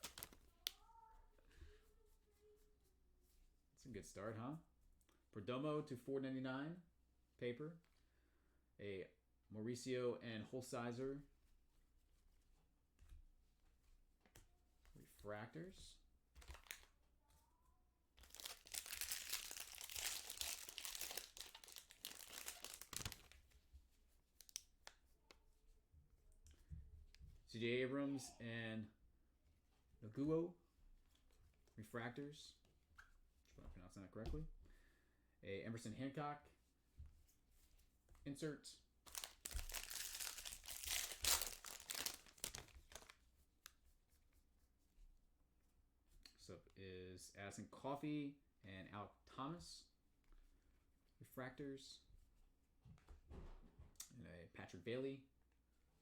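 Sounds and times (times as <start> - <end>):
foil wrapper tearing and crinkling: 0.0 - 0.4, 16.5 - 16.9, 18.2 - 23.4, 39.1 - 43.1.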